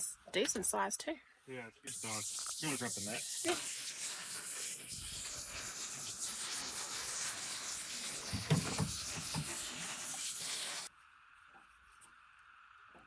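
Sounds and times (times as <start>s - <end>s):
dull knocks: 8.4s - 9.4s.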